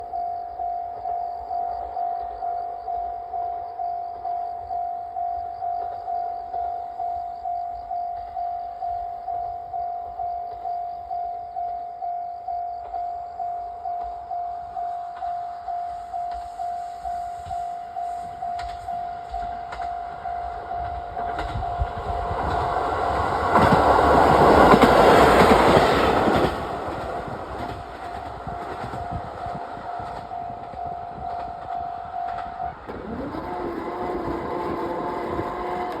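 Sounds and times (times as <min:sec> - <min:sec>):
level-crossing alarm dinging: 0:00.0 - 0:36.0
diesel railcar passing: 0:12.8 - 0:36.0.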